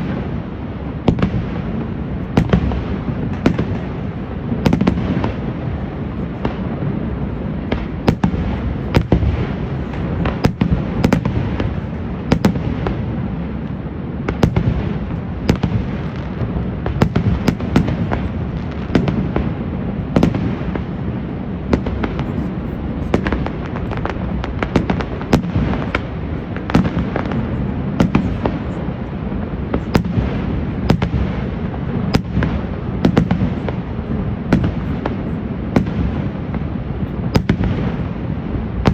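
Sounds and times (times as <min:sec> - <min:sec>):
fireworks bangs: 0:00.0 - 0:38.9.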